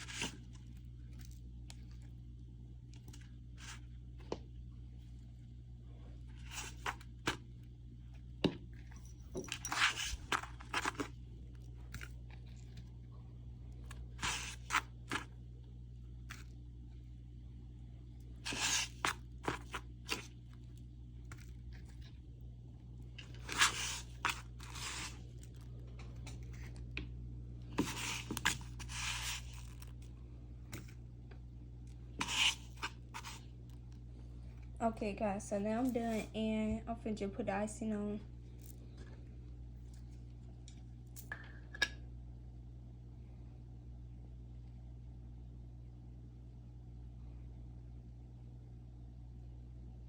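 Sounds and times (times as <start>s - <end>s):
food scraping and crunching: 0.0s - 2.2s, 2.9s - 4.0s, 6.1s - 15.4s, 16.2s - 16.6s, 18.4s - 22.2s, 23.1s - 27.0s, 27.6s - 31.0s, 31.8s - 34.7s
steady low hum: 0.0s - 50.0s.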